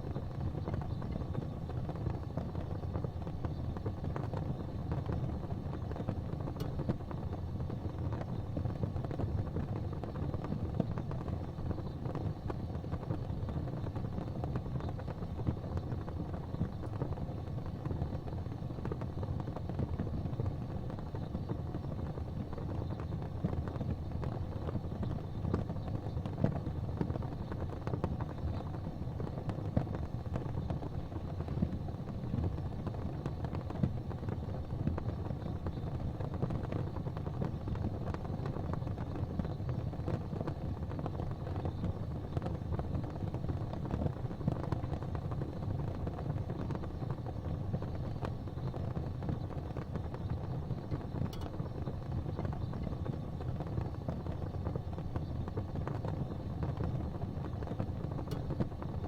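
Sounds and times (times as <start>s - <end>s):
gas fireplace flames rumbling: 0.0s - 59.0s
faint clicks: 5.0s - 7.1s, 50.9s - 51.8s, 57.6s - 58.9s.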